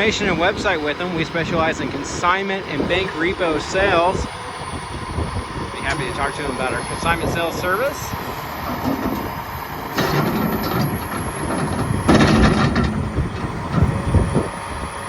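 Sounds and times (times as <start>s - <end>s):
excavator mechanical rumble: 0.0s - 15.0s
heavy metallic clanks: 5.8s - 14.7s.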